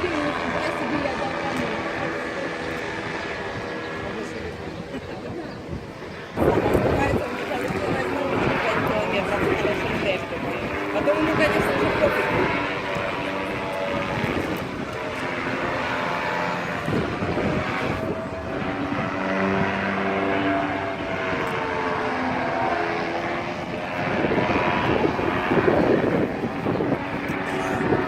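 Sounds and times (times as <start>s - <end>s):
paraglider engine droning overhead: 0.0s - 28.0s.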